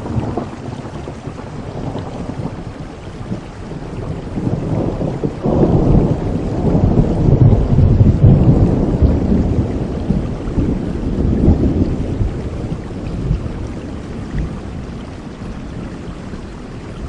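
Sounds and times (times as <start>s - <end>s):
steady rain: 0.0s - 17.0s
thunder rumbling: 0.0s - 17.0s.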